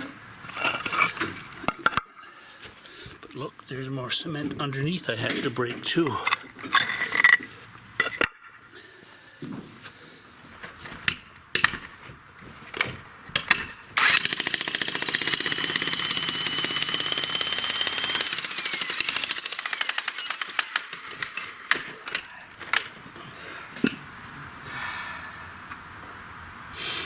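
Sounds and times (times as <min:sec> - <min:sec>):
jackhammer breaking concrete: 0:14.0 - 0:21.8.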